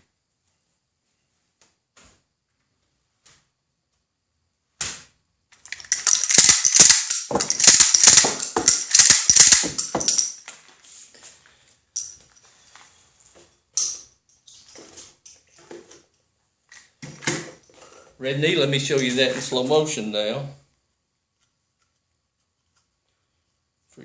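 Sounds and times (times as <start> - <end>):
shotgun action clacking: 5.7 - 10.4.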